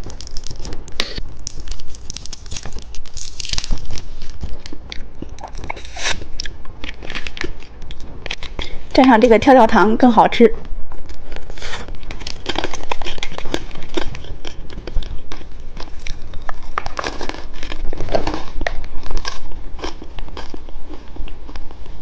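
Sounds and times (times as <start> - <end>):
candy crunching: 0.0 - 9.5, 10.9 - 21.9
popping candy crackling: 0.0 - 9.6, 11.0 - 21.6
wet mouth sounds: 4.8 - 8.8.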